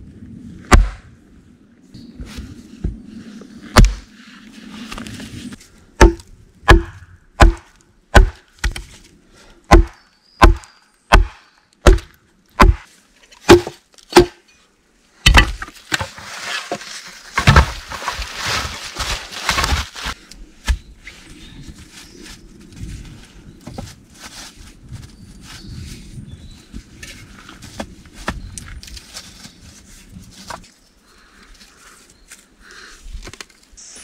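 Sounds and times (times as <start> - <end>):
axe chopping wood: 0.7 - 1.1, 3.7 - 4.0, 6.0 - 8.9, 9.7 - 14.4, 15.2 - 16.0, 17.4 - 17.8
branches rustling and cracking: 15.2 - 33.8.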